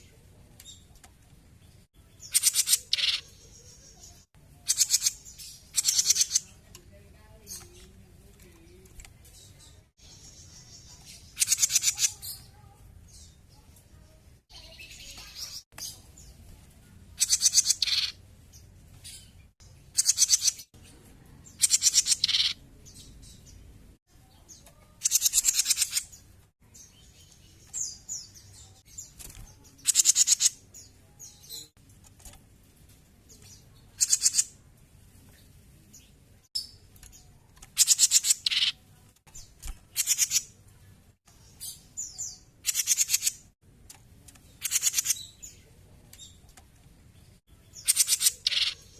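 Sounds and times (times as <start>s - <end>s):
bird singing rapid trills: 2.1s - 6.6s, 9.5s - 12.6s, 17.2s - 18.2s, 19.0s - 20.8s, 21.5s - 23.6s, 24.2s - 26.2s, 26.8s - 31.8s, 33.3s - 34.6s, 36.6s - 38.8s, 39.9s - 40.6s, 44.6s - 45.6s, 47.6s - 48.9s.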